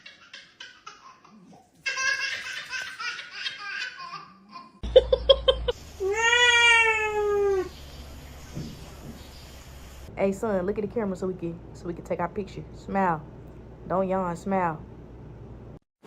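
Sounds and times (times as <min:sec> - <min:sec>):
person laughing: 0:04.8 - 0:06.1.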